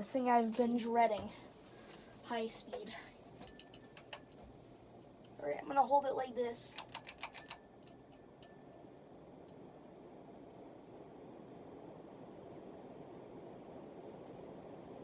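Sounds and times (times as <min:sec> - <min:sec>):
ceiling fan whooshing: 0:00.0 - 0:15.0
sharp clicks: 0:06.8 - 0:07.6.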